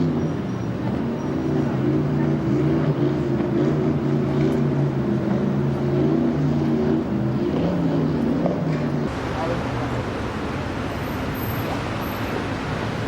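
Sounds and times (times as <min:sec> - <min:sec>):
engine running steadily: 0:08.1 - 0:13.0.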